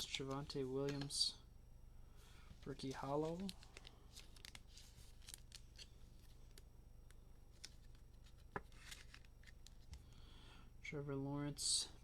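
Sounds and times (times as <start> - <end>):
low steady hum: 0.0 - 12.0
trading cards sliding and rustling: 7.5 - 10.0.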